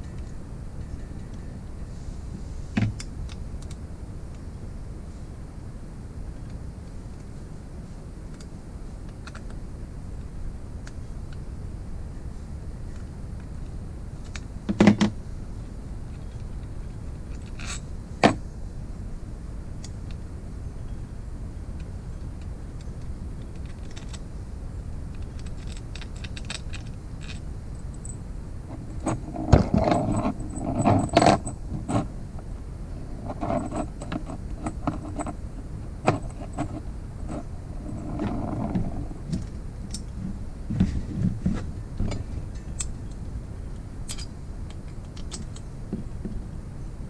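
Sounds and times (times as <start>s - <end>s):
metal parts and tools clinking: 28.0s - 32.1s, 33.0s - 35.4s, 36.0s - 40.2s, 44.1s - 45.7s.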